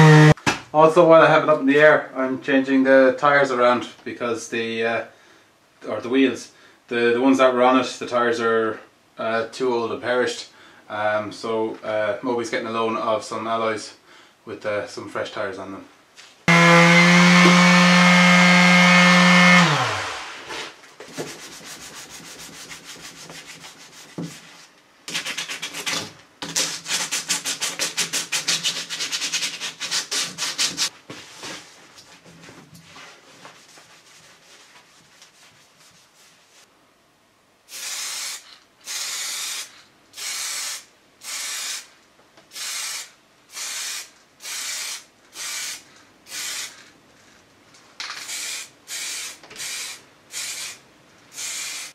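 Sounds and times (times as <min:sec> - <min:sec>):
power tool motor running: 0:16.5 - 0:20.5
sandpaper rubbing on car body: 0:21.3 - 0:24.4, 0:25.1 - 0:26.0, 0:26.6 - 0:30.9.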